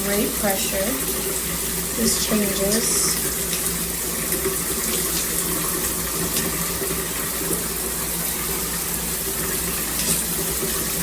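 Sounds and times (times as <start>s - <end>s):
shower water spraying: 0.0s - 11.0s.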